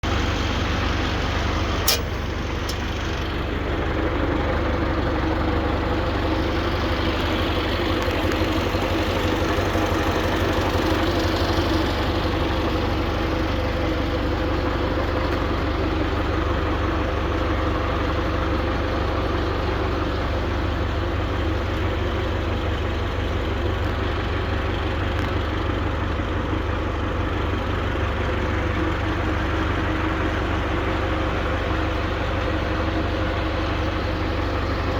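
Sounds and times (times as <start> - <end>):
tractor engine running: 0.0 - 34.9
baler mechanism turning: 1.8 - 3.0
sharp click: 1.8 - 3.0.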